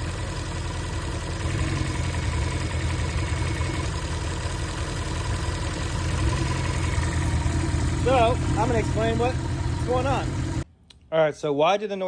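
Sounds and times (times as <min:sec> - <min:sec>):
car engine idling: 0:00.0 - 0:10.7.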